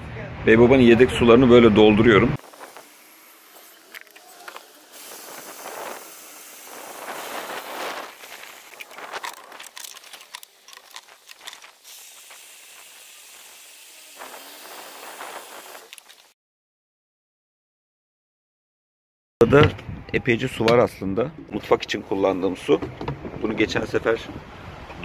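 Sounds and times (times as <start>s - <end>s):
water running through hose: 2.4s - 16.3s.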